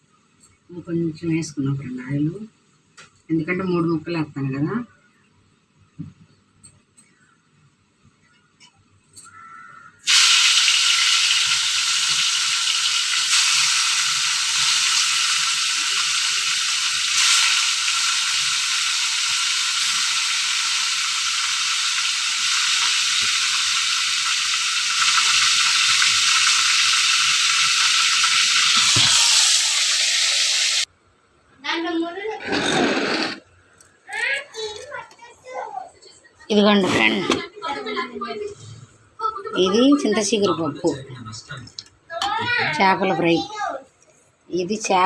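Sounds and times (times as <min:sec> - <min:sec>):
fish sizzling in hot oil: 0:10.0 - 0:30.9.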